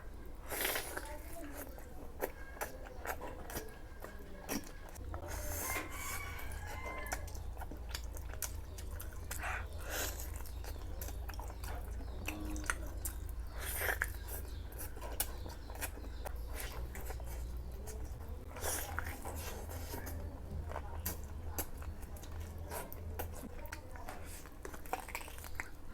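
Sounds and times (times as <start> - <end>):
person chewing and lip-smacking: 0.4 - 25.9.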